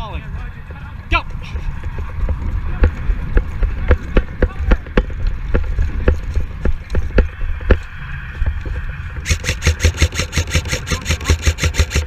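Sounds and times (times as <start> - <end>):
airsoft rifle full-auto fire: 9.2 - 12.0.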